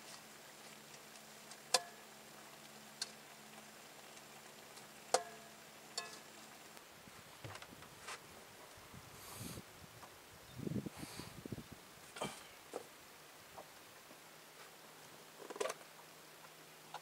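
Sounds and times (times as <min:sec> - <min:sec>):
faint steady hum: 0:00.0 - 0:17.0
soft rustling: 0:06.3 - 0:10.2.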